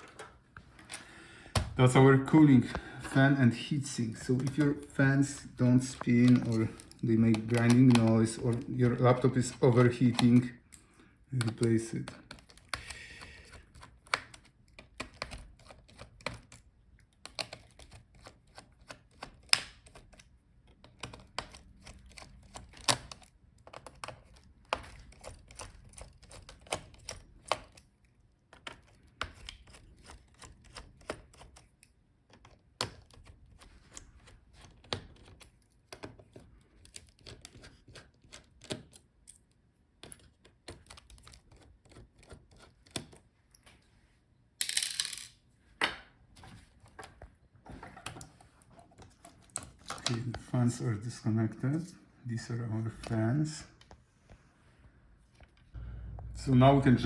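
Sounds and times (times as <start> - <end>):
screwdriver clicks and taps: 6.0 - 8.7.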